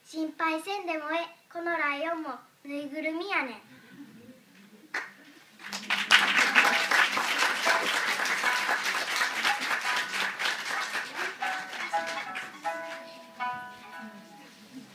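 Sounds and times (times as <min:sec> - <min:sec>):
audience applauding: 0:05.0 - 0:14.2.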